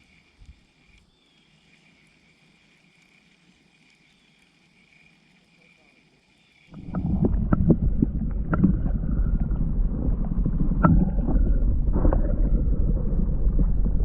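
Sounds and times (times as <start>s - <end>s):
wind and water rumble: 6.7s - 14.0s
knocks and clicks against hull: 6.8s - 9.5s, 10.5s - 12.7s.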